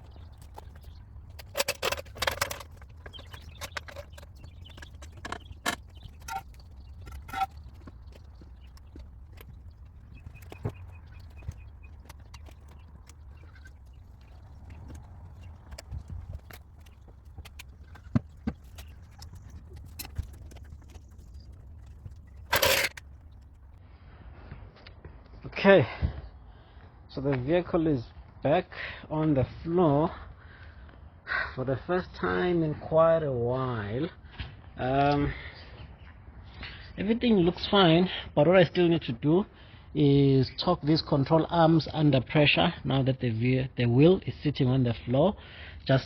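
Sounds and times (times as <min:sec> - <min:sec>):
metal tools clicking and knocking: 0:00.0 - 0:09.6, 0:22.3 - 0:23.2
metal clinks and knocks: 0:00.0 - 0:23.6
steady low hum: 0:00.0 - 0:23.8
metal scrape: 0:01.4 - 0:08.2, 0:22.2 - 0:23.0.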